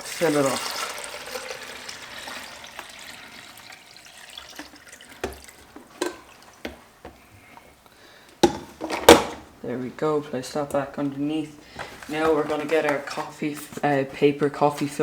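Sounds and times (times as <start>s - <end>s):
water pouring into reservoir: 0.0s - 6.6s.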